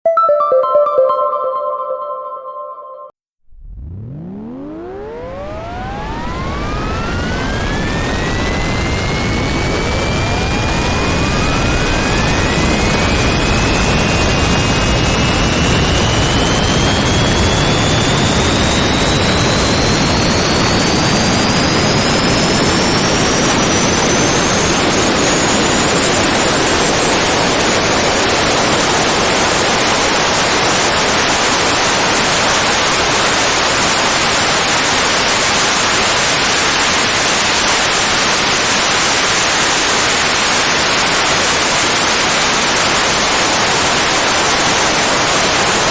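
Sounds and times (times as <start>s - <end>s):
jet engine whine rising in pitch: 3.8s - 9.8s.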